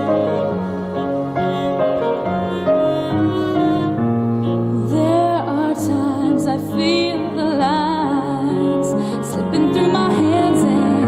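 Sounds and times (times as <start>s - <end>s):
slow gentle instrumental worship music: 0.0s - 11.0s.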